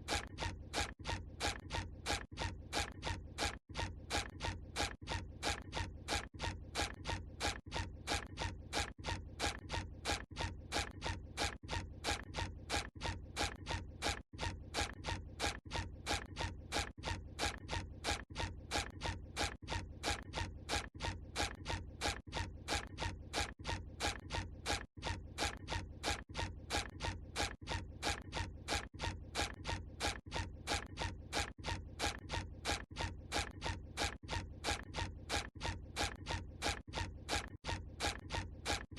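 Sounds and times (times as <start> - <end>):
cartoon footstep sounds: 26.8 - 38.9.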